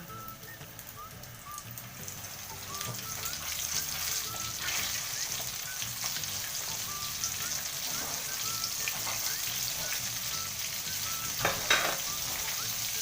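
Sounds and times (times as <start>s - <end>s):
food sizzling in hot oil: 0.0s - 13.0s.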